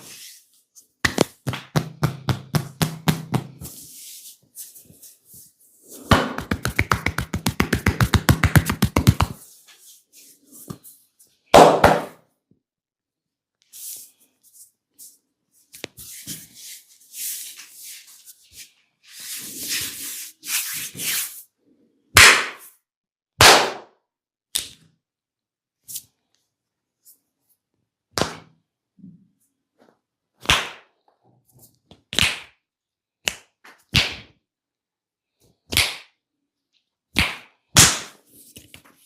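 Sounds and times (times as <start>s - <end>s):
rapid percussive slaps on skin: 6.1s - 9.4s, 22.2s - 22.7s, 30.4s - 30.9s
hands rubbing over skin: 15.7s - 21.4s.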